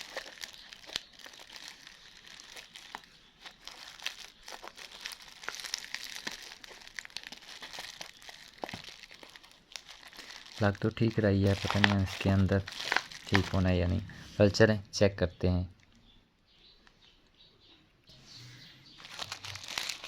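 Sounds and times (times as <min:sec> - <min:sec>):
packaging crinkling: 0:00.0 - 0:14.1, 0:19.0 - 0:20.0.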